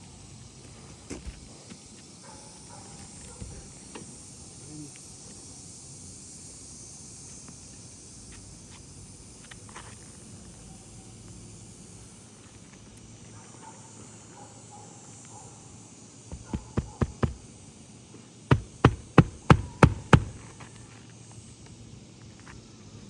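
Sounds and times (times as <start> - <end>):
hammer driving roofing nails: 18.5 - 20.4.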